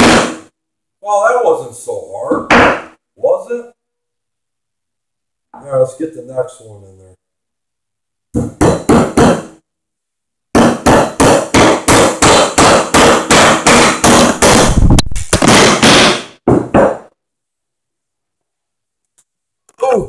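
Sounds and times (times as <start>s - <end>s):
hammer striking nail: 0.0s - 0.5s, 8.3s - 9.6s, 10.5s - 14.8s, 15.4s - 17.1s.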